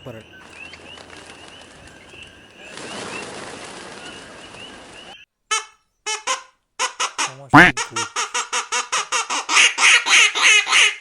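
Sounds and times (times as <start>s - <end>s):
waterfowl honking: 6.8s - 11.0s.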